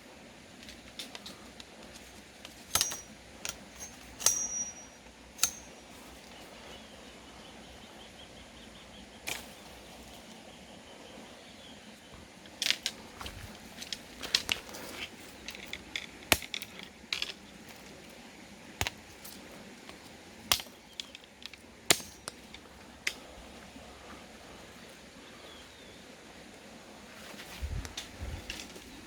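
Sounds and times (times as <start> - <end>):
faint outdoor background: 0.0 - 29.0
faint bird chirps: 5.6 - 12.2.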